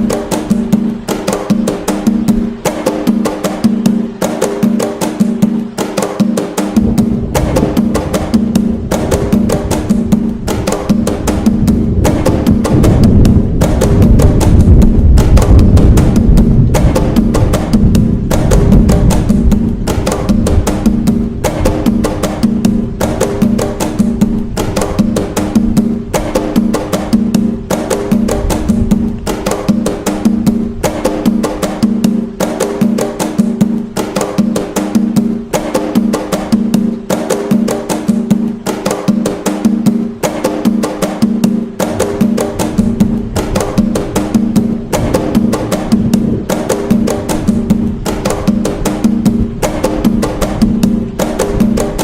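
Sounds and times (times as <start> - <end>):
hand drums playing rhythm: 0.0 - 52.0.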